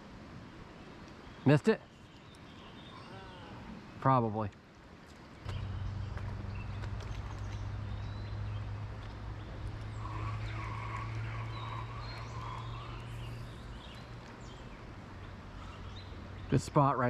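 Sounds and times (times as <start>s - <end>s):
rushing outdoor noise: 0.0s - 17.0s
constant low hum: 4.7s - 17.0s.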